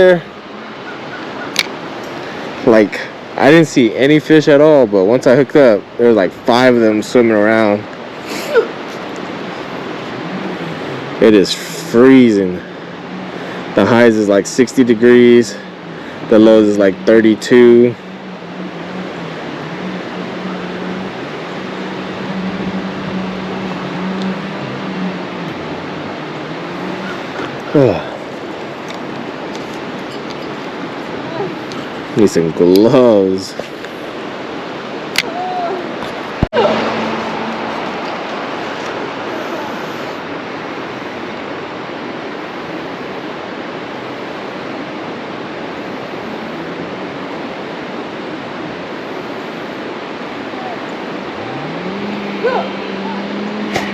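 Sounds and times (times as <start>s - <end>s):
stream water rushing: 0.0s - 53.9s
steady low hum: 1.8s - 35.1s.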